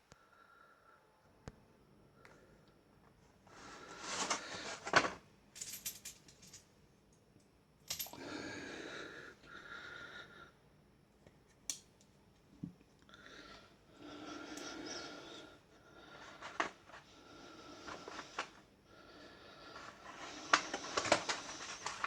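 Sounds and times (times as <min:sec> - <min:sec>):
rustling handling noise: 0:03.9 - 0:06.6, 0:16.2 - 0:17.1, 0:19.8 - 0:22.0
metal clinks: 0:05.6 - 0:06.7, 0:07.9 - 0:08.2.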